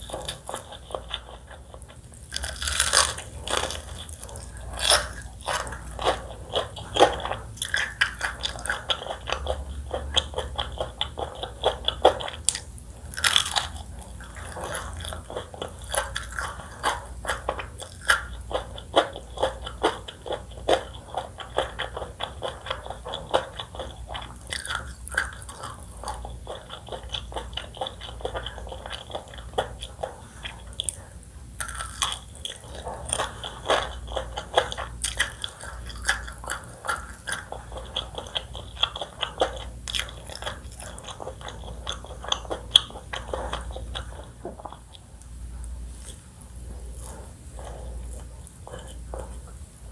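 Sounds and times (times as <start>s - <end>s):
crunchy bites and chewing: 0.0s - 49.9s.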